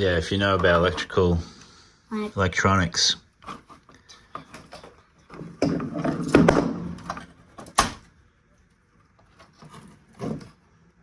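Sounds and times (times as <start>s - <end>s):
plastic scraping and rattling: 3.4s - 7.8s, 9.1s - 10.6s.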